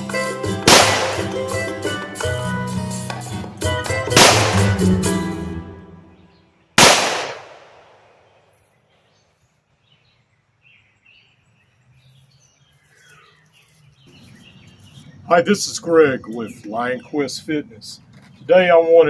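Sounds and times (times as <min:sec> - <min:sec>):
loud gunshot: 0:00.7 - 0:01.3, 0:04.2 - 0:04.9, 0:06.8 - 0:08.2.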